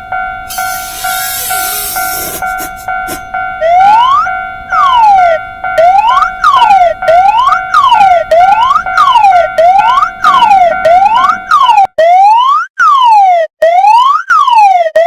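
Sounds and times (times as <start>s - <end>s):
steady held tone: 0.0s - 11.9s
siren wailing: 0.0s - 15.0s.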